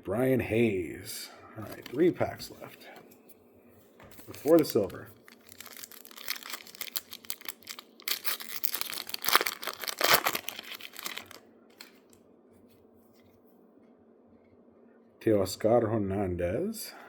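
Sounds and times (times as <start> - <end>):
card pack wrapper tearing and crinkling: 4.2 - 12.2.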